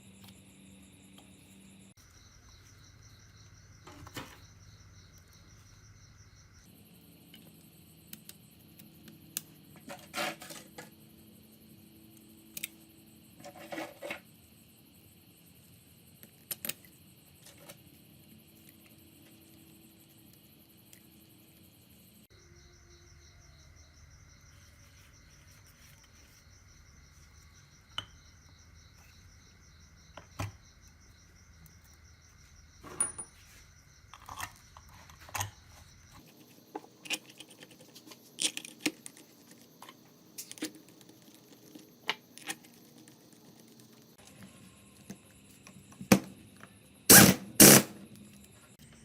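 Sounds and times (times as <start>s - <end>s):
faint steady hum: 0.0s - 49.0s.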